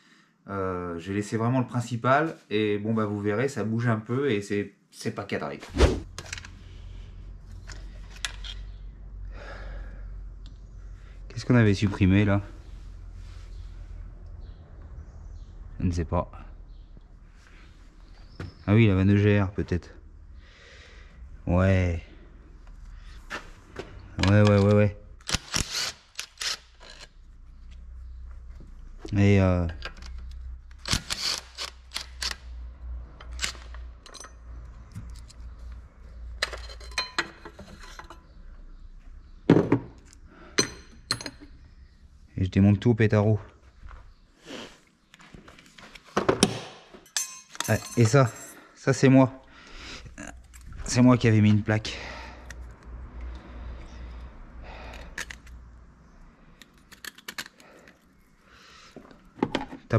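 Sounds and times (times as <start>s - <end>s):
metal parts and tools clicking: 7.6s - 8.7s, 24.1s - 27.2s, 29.8s - 32.6s, 33.2s - 38.2s, 40.0s - 41.6s, 47.0s - 48.7s, 54.8s - 55.6s, 56.5s - 58.4s
metal tools clinking: 33.2s - 35.4s, 36.4s - 38.2s, 40.6s - 41.6s, 47.0s - 48.8s.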